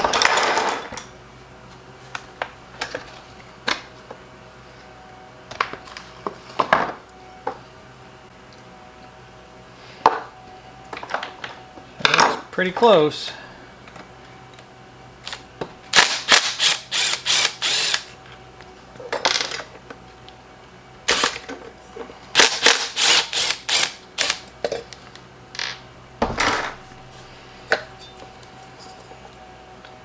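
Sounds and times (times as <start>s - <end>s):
power tool bursts: 15.9s - 18.1s, 21.0s - 21.4s, 22.4s - 24.4s.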